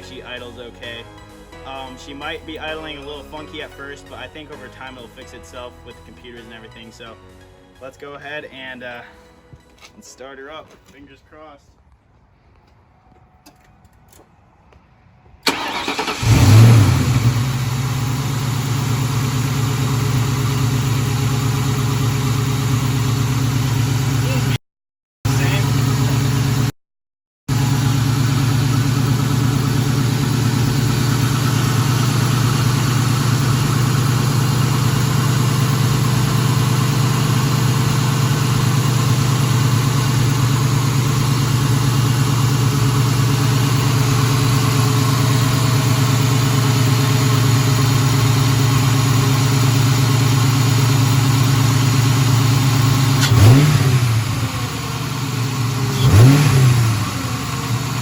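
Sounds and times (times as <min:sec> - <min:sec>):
car engine idling: 0:15.4 - 0:24.6, 0:25.3 - 0:26.7, 0:27.5 - 0:58.0
engine revving: 0:15.4 - 0:24.6, 0:27.5 - 0:58.0.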